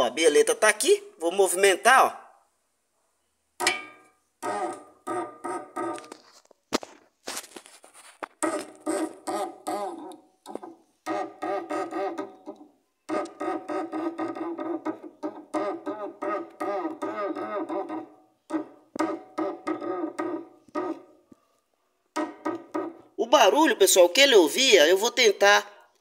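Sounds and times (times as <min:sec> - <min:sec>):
pitched squeaks of metal link: 0:03.6 - 0:06.2, 0:08.4 - 0:21.2
knocks: 0:10.5 - 0:21.0, 0:22.2 - 0:23.2.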